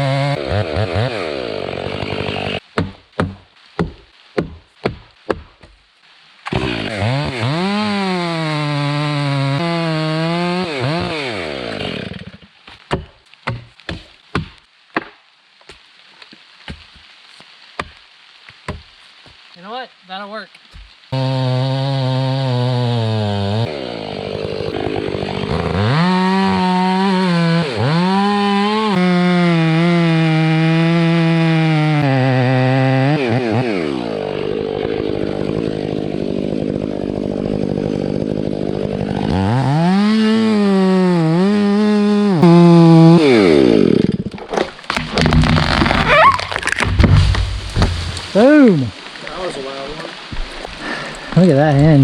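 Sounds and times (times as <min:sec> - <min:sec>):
chainsaw revving: 0:00.0 - 0:02.6, 0:06.5 - 0:12.4, 0:21.2 - 0:48.7
sharp knocks: 0:44.9 - 0:48.4.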